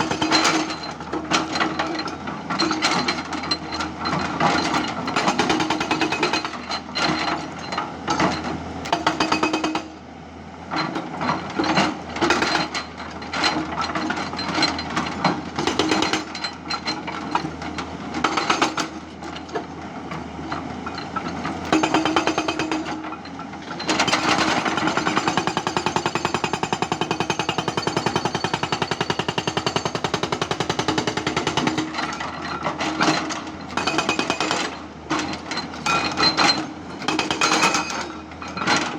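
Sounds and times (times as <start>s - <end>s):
hydraulic breaker hammering: 21.7s - 23.0s, 24.0s - 32.0s.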